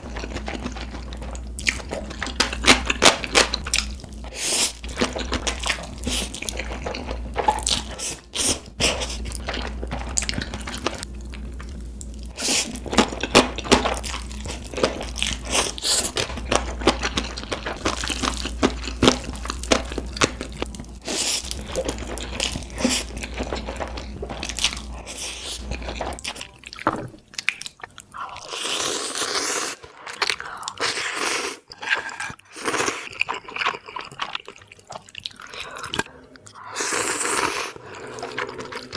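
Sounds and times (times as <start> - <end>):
steady low hum: 0.0 - 28.4
crunchy chewing: 0.0 - 38.9.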